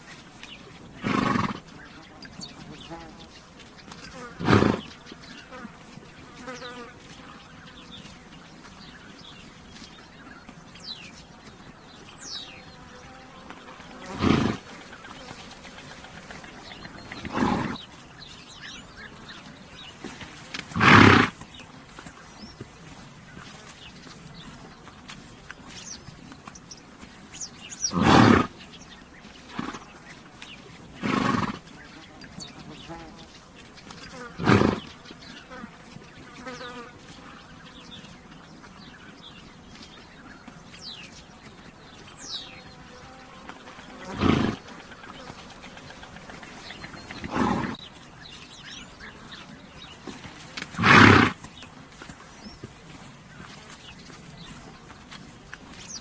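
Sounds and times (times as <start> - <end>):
small birds chirping: 0.0 - 56.0
horse snorting: 0.6 - 3.2, 3.9 - 5.6, 13.0 - 18.0, 19.8 - 21.7, 27.8 - 28.7, 29.4 - 30.0, 30.8 - 32.0, 34.1 - 35.0, 43.8 - 48.0, 49.9 - 51.7
horse blowing: 1.0 - 1.7, 4.4 - 4.9, 14.0 - 14.8, 15.7 - 17.9, 20.0 - 21.4, 27.9 - 28.6, 31.0 - 31.7, 34.3 - 34.8, 44.0 - 44.7, 47.0 - 47.8, 50.6 - 51.5.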